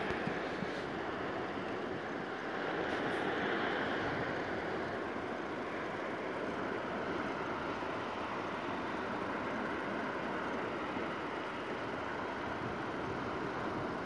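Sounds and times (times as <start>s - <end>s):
sea surf rushing on shore: 0.0s - 14.0s
wind noise on microphone: 12.4s - 14.0s.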